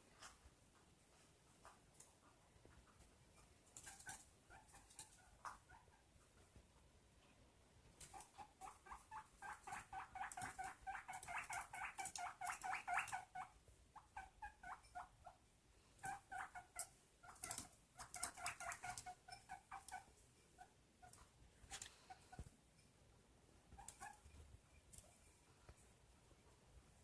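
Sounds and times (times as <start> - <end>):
guinea pig squeaking: 3.4 - 6.1, 8.0 - 22.4, 23.7 - 25.2.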